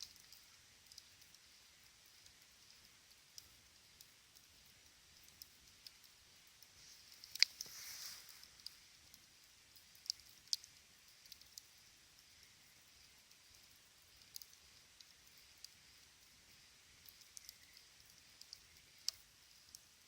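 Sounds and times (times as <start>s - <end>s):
campfire crackling and popping: 0.0s - 20.0s
fire hiss: 6.6s - 10.6s.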